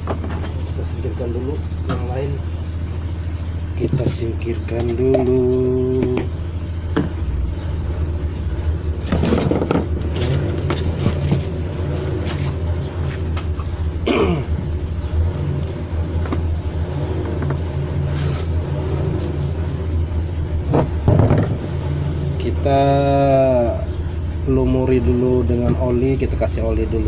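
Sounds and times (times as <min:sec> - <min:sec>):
engine parts clattering: 0:00.0 - 0:27.0
low mechanical rumble: 0:00.0 - 0:27.0.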